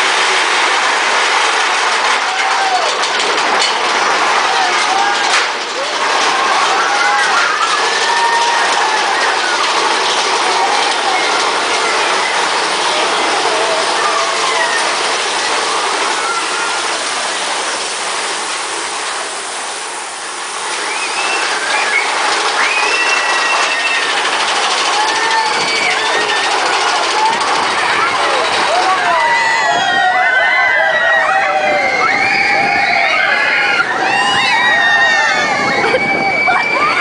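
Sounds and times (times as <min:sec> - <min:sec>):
roller coaster wheel and wind rush: 0:00.0 - 0:37.0.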